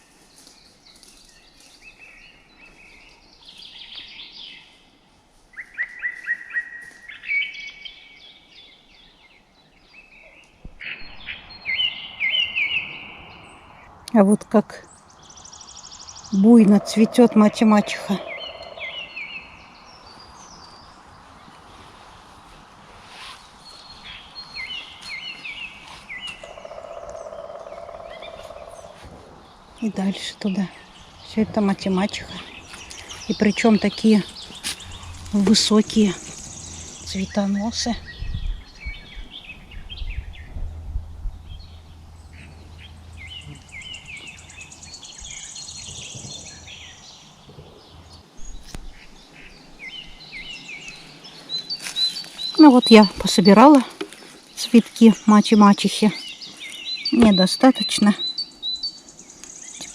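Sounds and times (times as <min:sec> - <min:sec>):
small birds chirping: 0:00.0 - 0:59.9
low steady rumble: 0:27.2 - 0:50.3.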